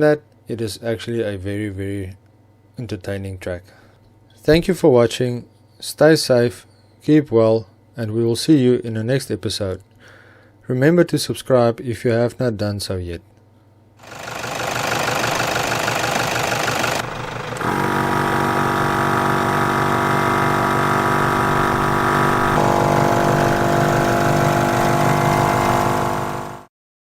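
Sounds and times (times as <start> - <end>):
engine running: 14.0 - 26.7.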